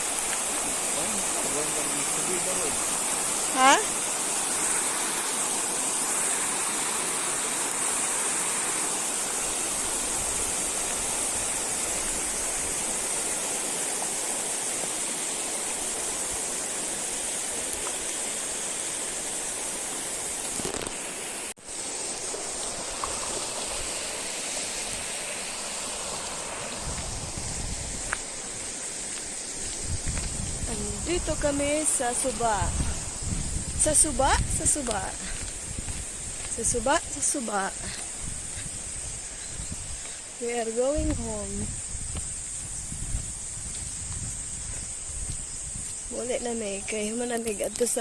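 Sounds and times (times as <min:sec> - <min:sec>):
river water rushing: 0:00.0 - 0:30.0.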